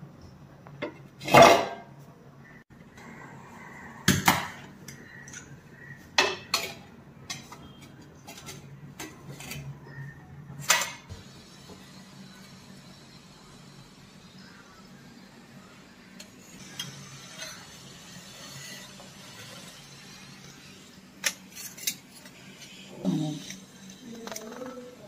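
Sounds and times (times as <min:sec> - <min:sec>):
utensils and dishes clinking: 0:06.2 - 0:10.0, 0:21.2 - 0:25.0.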